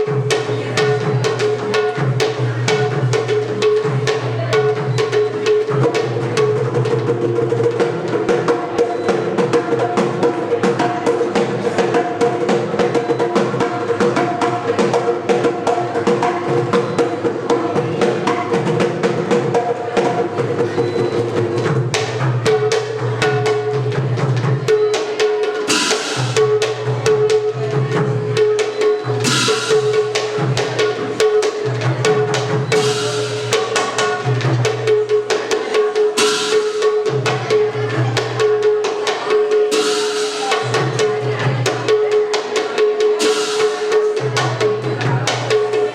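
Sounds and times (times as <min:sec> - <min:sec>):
drum-led ensemble music: 0:00.0 - 0:45.9
cymbal clashes: 0:25.6 - 0:26.6, 0:29.0 - 0:31.0.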